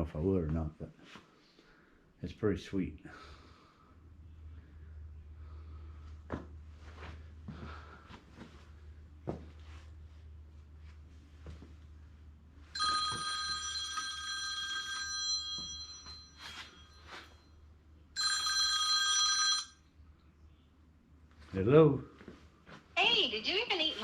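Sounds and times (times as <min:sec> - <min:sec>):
telephone ringing: 0:12.7 - 0:20.0.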